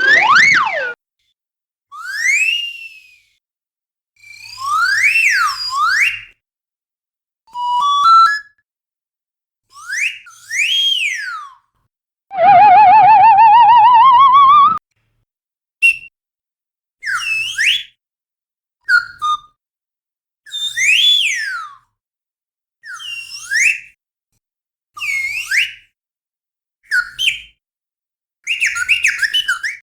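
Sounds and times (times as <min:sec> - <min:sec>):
slide whistle glides: 0:00.0 - 0:01.0, 0:12.3 - 0:14.8.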